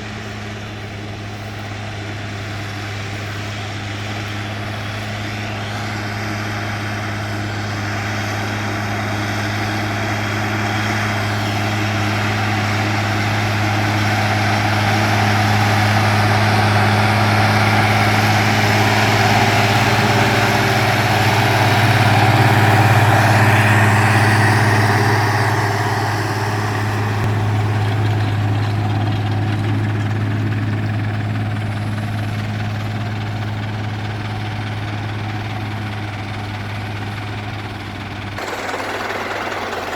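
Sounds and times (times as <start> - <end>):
tractor diesel engine under load: 0.0 - 39.9.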